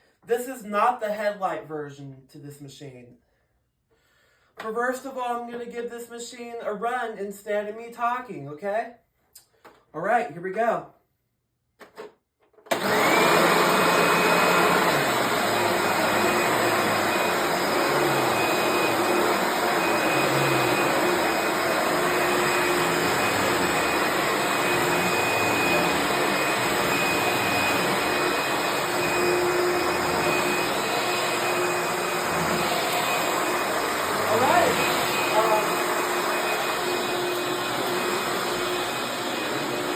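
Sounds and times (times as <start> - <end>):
vacuum cleaner motor whine: 12.7 - 39.9.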